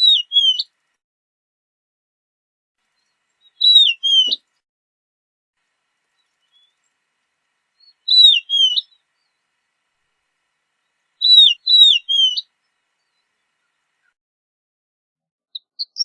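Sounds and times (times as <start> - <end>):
bird high-pitched phrases: 0.0 - 0.6, 3.5 - 4.4, 7.8 - 9.0, 11.2 - 12.5.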